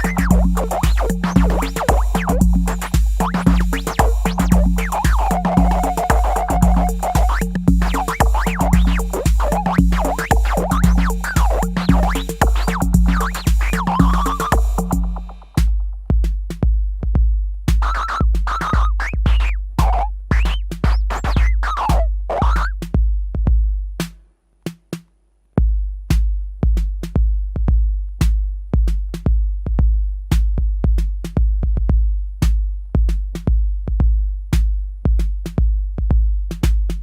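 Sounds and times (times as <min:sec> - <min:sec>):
pitched synth sweeps: 0:00.0 - 0:15.3
booming kick drum: 0:00.0 - 0:24.1, 0:25.6 - 0:37.0
hi-hat and percussion clicks: 0:00.0 - 0:37.0.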